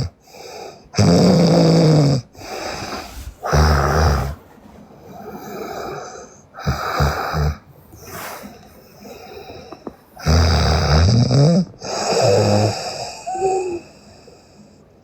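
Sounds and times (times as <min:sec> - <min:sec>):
woman snoring loudly: 0:01.0 - 0:04.4, 0:05.4 - 0:07.7, 0:10.2 - 0:14.0
soft breathing: 0:02.2 - 0:10.3, 0:11.5 - 0:15.0.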